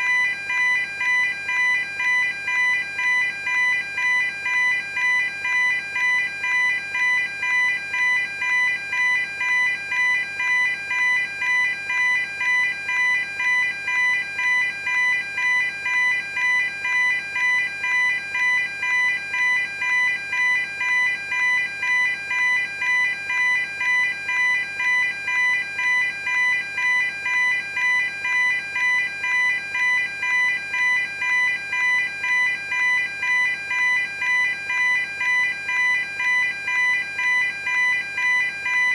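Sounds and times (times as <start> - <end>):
level crossing alarm dinging: 0.0 - 38.9.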